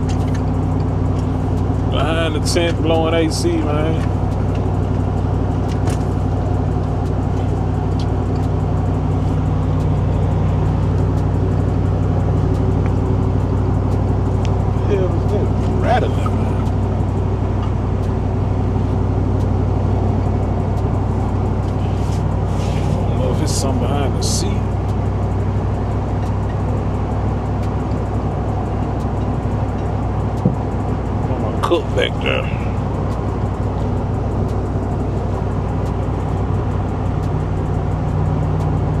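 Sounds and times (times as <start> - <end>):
car engine and road drone: 0.0 - 39.0
faint rattle ticks: 0.0 - 39.0.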